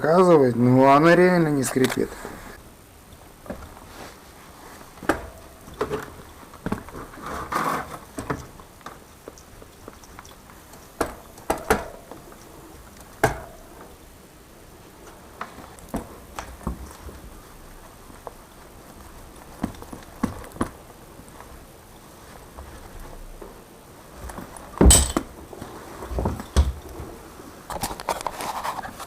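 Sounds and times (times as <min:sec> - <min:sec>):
rough rubbing noise: 0:06.9 - 0:08.2.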